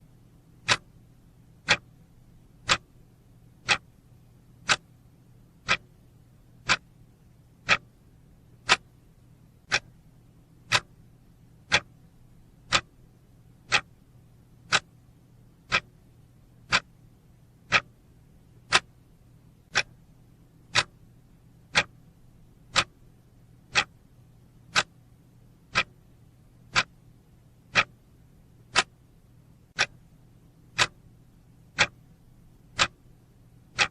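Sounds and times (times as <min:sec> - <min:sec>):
clock ticking: 0:00.6 - 0:01.0, 0:01.6 - 0:02.0, 0:02.6 - 0:02.9, 0:03.6 - 0:04.0, 0:04.6 - 0:04.9, 0:05.6 - 0:05.9, 0:06.6 - 0:06.9, 0:07.6 - 0:08.0, 0:08.6 - 0:08.9, 0:09.6 - 0:10.0, 0:10.7 - 0:11.0, 0:11.6 - 0:12.0, 0:12.7 - 0:13.0, 0:13.6 - 0:14.0, 0:14.6 - 0:15.0, 0:15.7 - 0:16.0, 0:16.6 - 0:17.0, 0:17.7 - 0:18.0, 0:18.6 - 0:19.0, 0:19.7 - 0:20.0, 0:20.6 - 0:21.0, 0:21.7 - 0:21.9, 0:22.7 - 0:23.0, 0:23.7 - 0:24.0, 0:24.7 - 0:25.0, 0:25.7 - 0:26.1, 0:26.7 - 0:27.0, 0:27.7 - 0:28.0, 0:28.6 - 0:29.0, 0:29.7 - 0:30.1, 0:30.7 - 0:31.0, 0:31.7 - 0:32.1, 0:32.7 - 0:33.9.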